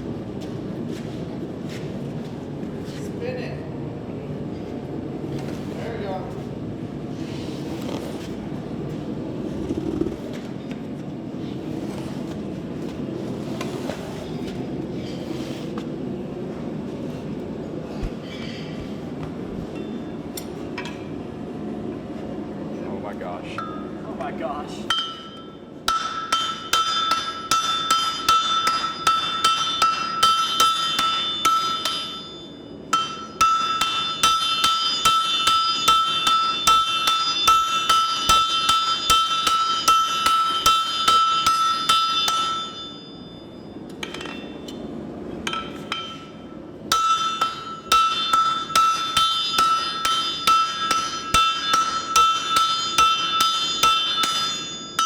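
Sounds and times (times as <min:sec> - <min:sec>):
axe polls striking steel on anvil: 0:24.9 - 0:43.3, 0:43.9 - 0:44.8, 0:45.4 - 0:55.0.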